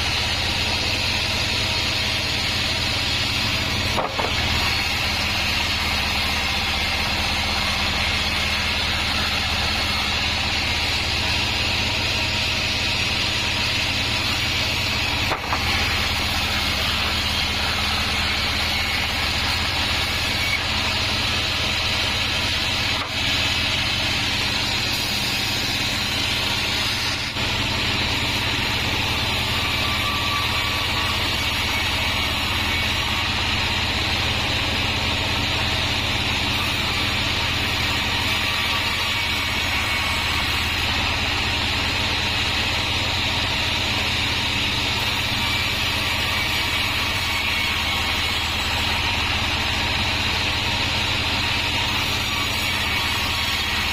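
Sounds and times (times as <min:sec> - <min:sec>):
saw blade hissing through wood: 0:00.0 - 0:27.4
motor hum: 0:00.0 - 0:35.0.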